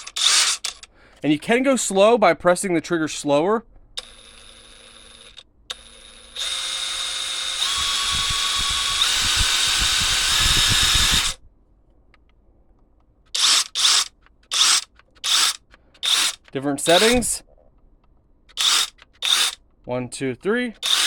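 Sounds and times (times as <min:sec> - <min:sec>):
impact wrench whining: 0:04.0 - 0:11.4, 0:13.4 - 0:17.4, 0:18.5 - 0:19.6, 0:20.8 - 0:21.0.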